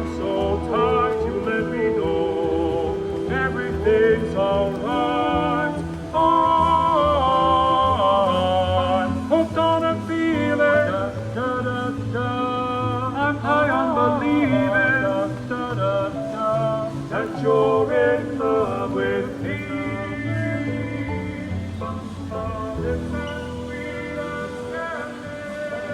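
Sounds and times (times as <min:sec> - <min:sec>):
high voice singing: 0:00.0 - 0:25.9.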